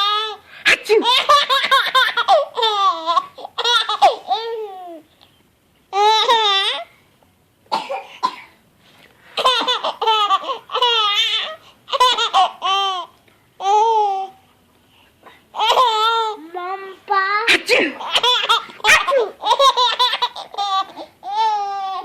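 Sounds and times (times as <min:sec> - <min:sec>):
baby laughing: 0:00.0 - 0:05.0, 0:05.9 - 0:06.9, 0:09.4 - 0:14.4, 0:15.6 - 0:16.4, 0:17.5 - 0:22.0
cough-like burst: 0:00.6 - 0:01.3, 0:07.7 - 0:08.6, 0:17.5 - 0:18.2.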